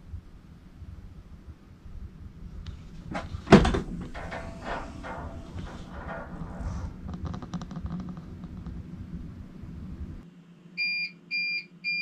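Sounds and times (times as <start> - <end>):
low electrical hum: 0.0 - 12.0
battery backup alarm beeps: 10.8 - 12.0.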